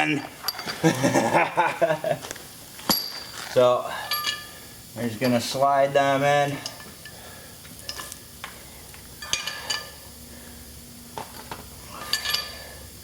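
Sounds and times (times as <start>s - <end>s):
metal studs clinking and scraping: 0.0s - 1.0s, 2.8s - 5.6s, 9.2s - 10.0s, 11.2s - 12.8s.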